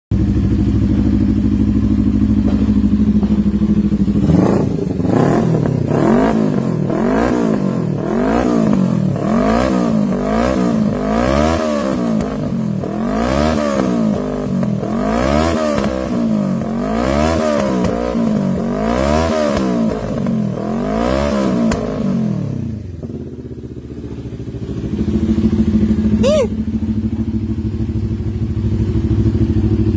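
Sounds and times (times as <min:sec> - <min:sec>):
motorcycle engine revving: 0:00.1 - 0:29.9
exhaust crackling pops: 0:15.7 - 0:16.1, 0:21.6 - 0:22.0.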